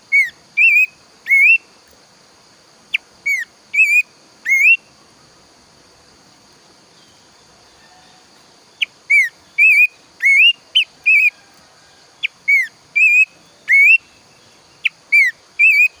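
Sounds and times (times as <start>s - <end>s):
faint high hiss: 0.0s - 16.0s
babbler singing whistles: 0.1s - 1.6s, 3.2s - 4.8s, 8.8s - 11.3s, 12.2s - 14.1s, 14.8s - 16.0s.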